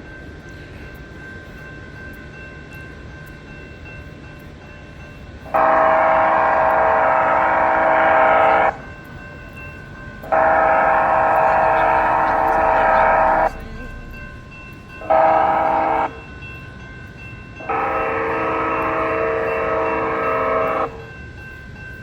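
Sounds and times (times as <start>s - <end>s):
crossing warning tones: 0.5s - 22.0s
train horn blast: 5.5s - 8.8s, 10.3s - 14.2s, 15.0s - 16.2s, 17.6s - 21.0s.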